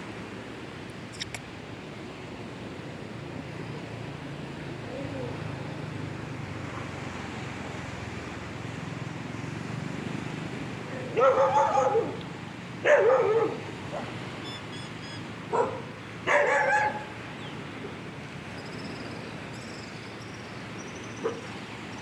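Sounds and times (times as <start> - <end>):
dogs barking: 10.9 - 12.2, 12.8 - 14.2, 15.5 - 17.2, 21.2 - 21.5.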